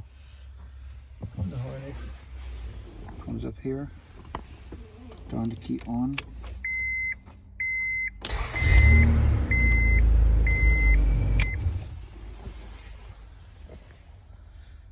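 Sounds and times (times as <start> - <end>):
dashboard warning chime beeping: 6.6 - 11.8
car starter and engine running: 8.0 - 12.7.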